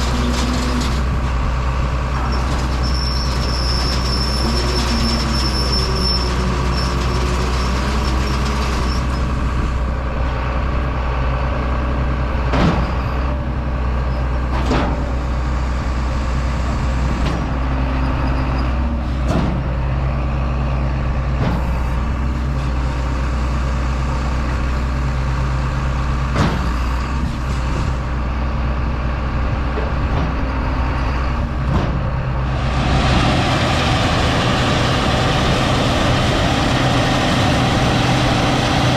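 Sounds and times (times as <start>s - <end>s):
heavy diesel engine running: 0.0s - 38.9s
high rushing noise: 32.4s - 38.9s.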